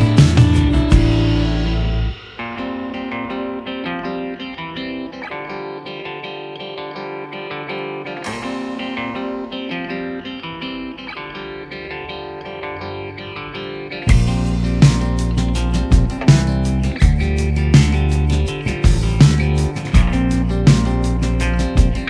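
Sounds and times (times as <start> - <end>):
band with drums: 0.0 - 3.2, 14.1 - 22.0
plucked guitar: 0.0 - 22.0.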